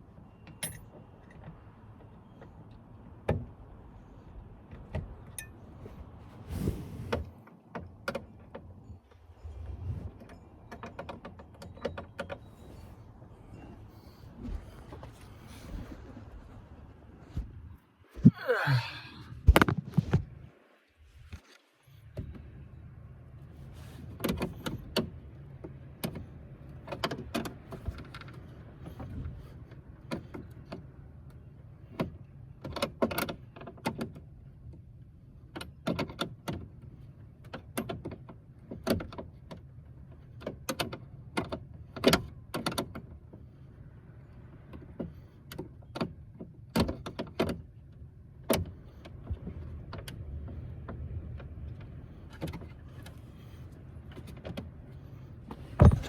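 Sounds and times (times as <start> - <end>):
heavy thuds: 55.5 - 56.0.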